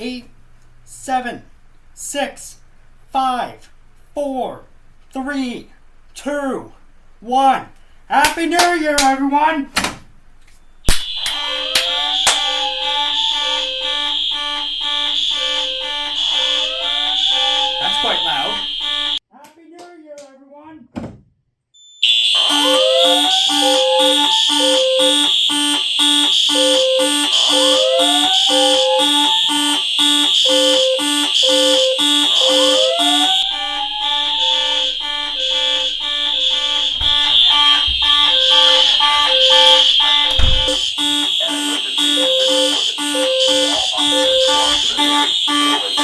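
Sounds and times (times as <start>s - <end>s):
shrill continuous fire alarm horn: 10.8s - 19.2s, 21.8s - 46.0s
pulsed low alarm horn tones: 11.0s - 19.2s, 22.0s - 46.0s
low thumps: 33.5s - 40.9s.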